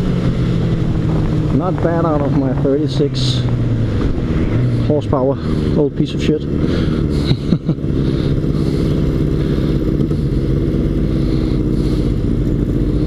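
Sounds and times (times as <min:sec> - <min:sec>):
wind rumble on microphone: 0:00.0 - 0:05.7
motorcycle engine running: 0:00.0 - 0:13.0.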